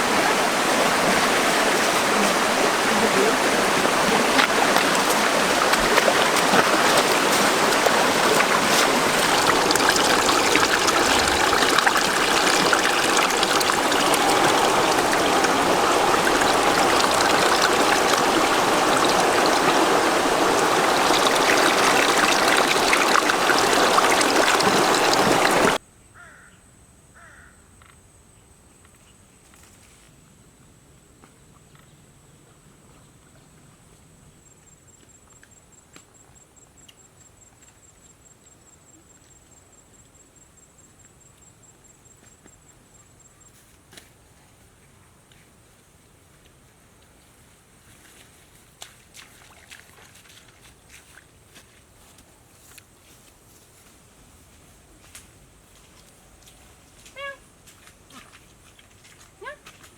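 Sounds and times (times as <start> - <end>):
waterfall rushing: 0.0 - 25.8.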